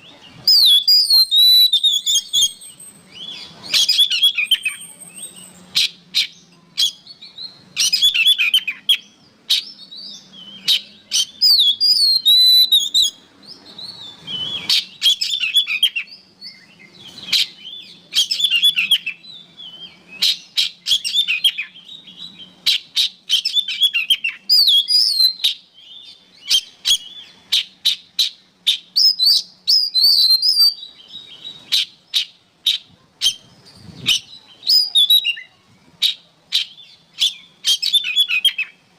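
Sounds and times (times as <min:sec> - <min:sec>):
songbird whistling and clicking: 0:00.5 - 0:07.0, 0:20.2 - 0:25.6, 0:26.4 - 0:30.8.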